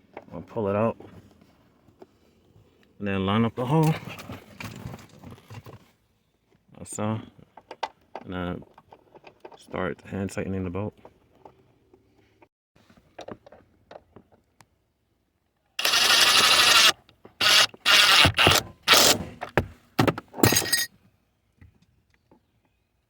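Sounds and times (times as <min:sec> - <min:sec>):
power tool bursts: 0:15.8 - 0:19.2.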